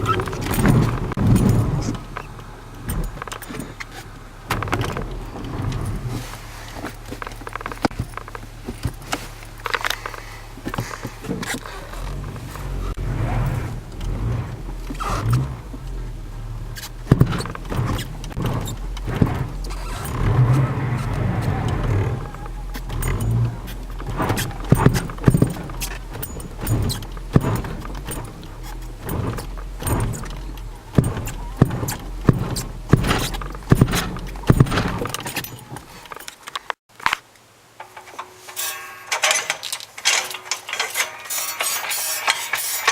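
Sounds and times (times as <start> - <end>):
car engine humming: 0.0 - 36.8
sharp engine thumps: 0.0 - 36.8
uneven low knocks: 10.7 - 36.1
metallic jangling rattles: 16.6 - 36.5, 38.2 - 42.9.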